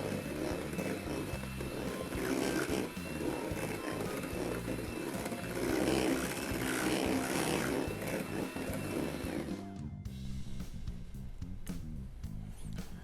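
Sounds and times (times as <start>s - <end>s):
electric mixer running: 0.0s - 9.8s.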